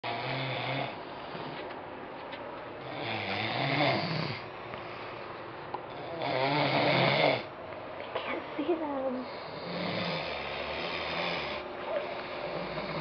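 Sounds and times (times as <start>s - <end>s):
man snoring: 0.0s - 1.5s, 2.8s - 4.5s, 5.9s - 7.5s, 9.2s - 13.0s
quiet breathing: 4.3s - 6.2s.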